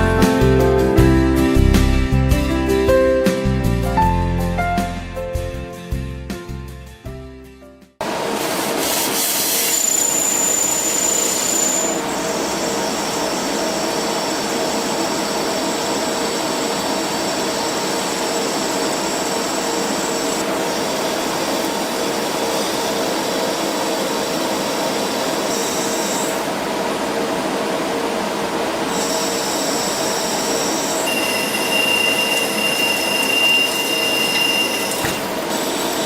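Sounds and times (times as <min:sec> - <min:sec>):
lathe machining metal: 0:08.0 - 0:26.5, 0:28.8 - 0:36.0
thin high whine: 0:08.8 - 0:27.2, 0:28.8 - 0:36.0.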